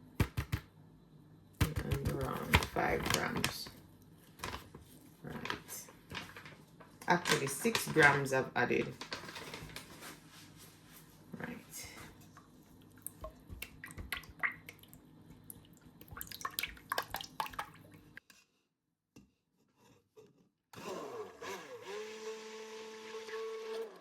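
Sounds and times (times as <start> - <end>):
stick blender humming: 20.8 - 24.0.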